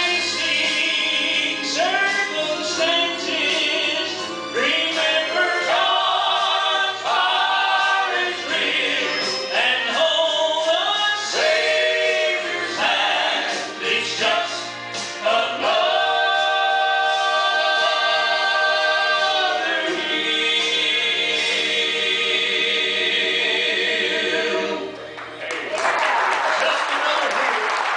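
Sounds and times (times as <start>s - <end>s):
vocal group singing in harmony: 0.0s - 25.4s.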